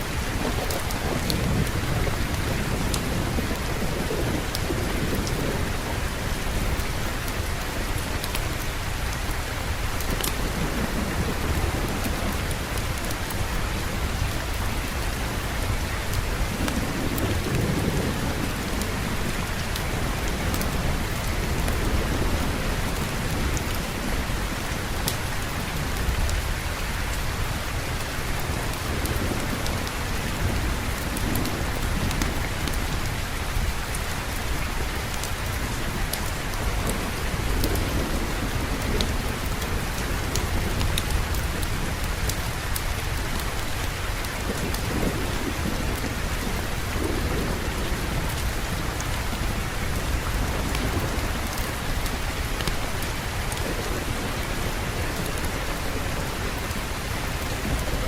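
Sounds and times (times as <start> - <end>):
steady rain falling: 0.0 - 58.0
rolling thunder rumble: 0.1 - 8.6, 9.6 - 27.0, 27.7 - 58.0.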